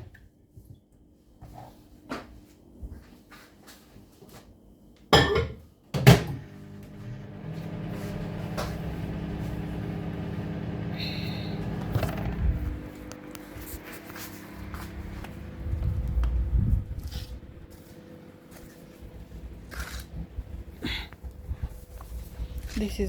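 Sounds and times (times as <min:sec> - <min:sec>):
appliance humming: 0:06.0 - 0:23.0.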